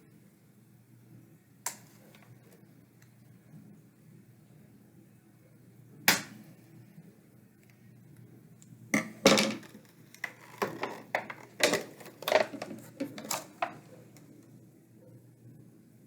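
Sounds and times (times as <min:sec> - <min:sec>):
packaging clicks and knocks: 0:09.0 - 0:13.9.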